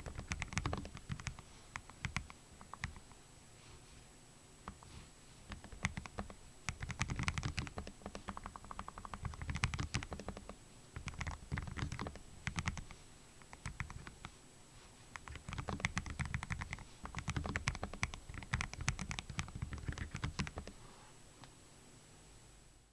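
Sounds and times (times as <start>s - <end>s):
keyboard typing: 0.0s - 3.2s, 4.7s - 4.9s, 5.5s - 14.3s, 15.1s - 20.7s.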